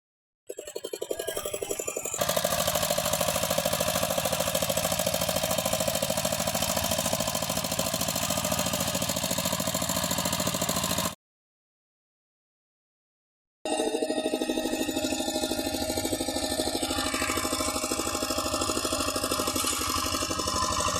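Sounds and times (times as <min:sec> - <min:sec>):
walking tractor engine chugging: 0:00.6 - 0:11.2, 0:14.3 - 0:20.9.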